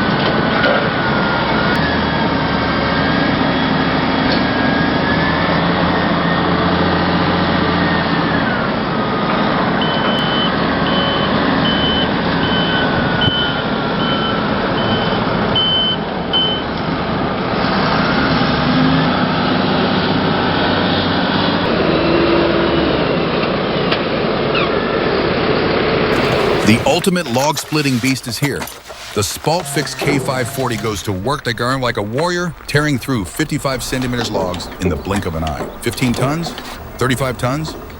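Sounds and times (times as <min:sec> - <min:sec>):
reversing alarm beeping: 0:09.8 - 0:16.7, 0:26.1 - 0:37.9
diesel engine running: 0:26.1 - 0:37.9.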